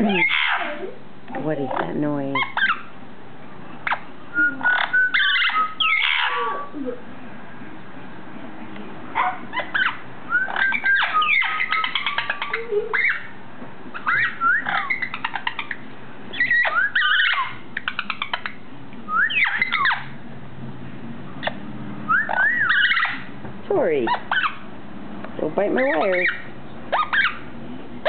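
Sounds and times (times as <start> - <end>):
parrot whistling and clicking: 3.8 - 6.4, 9.5 - 13.3, 13.9 - 20.1, 21.4 - 23.3.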